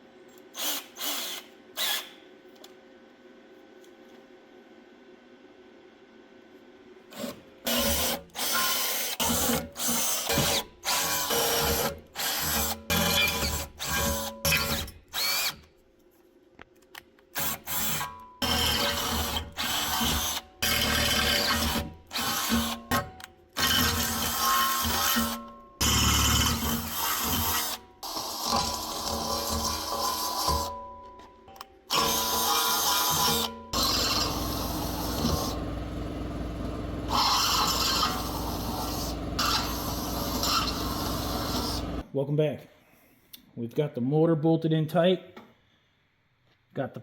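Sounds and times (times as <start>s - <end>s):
power drill bursts: 0.6s - 2.2s, 7.7s - 15.6s, 31.9s - 42.0s.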